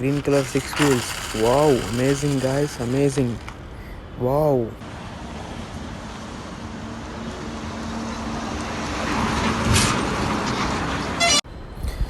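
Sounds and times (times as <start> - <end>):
motor vehicle running: 0.0 - 3.8.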